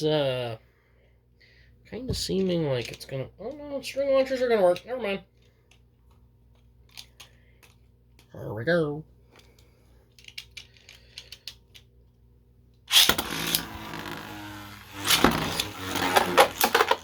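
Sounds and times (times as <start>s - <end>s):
spinning tops whirring: 12.9s - 17.0s
string launcher pull: 12.9s - 17.0s.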